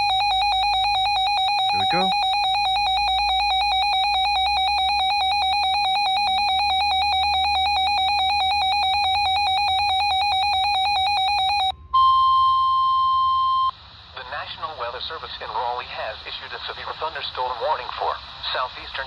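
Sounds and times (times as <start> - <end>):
rapid high-pitched electronic beeping: 0.0 - 11.7
steady alarm tone: 0.0 - 11.8.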